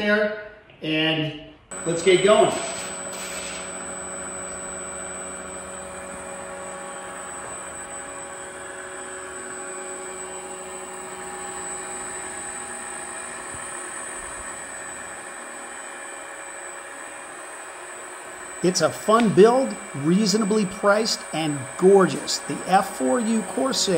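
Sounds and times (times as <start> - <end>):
small electric motor whining: 1.7 - 23.9.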